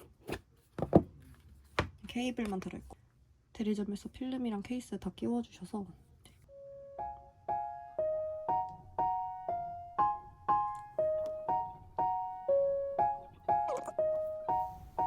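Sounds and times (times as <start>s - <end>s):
keyboard playing gentle chords: 6.5s - 15.0s.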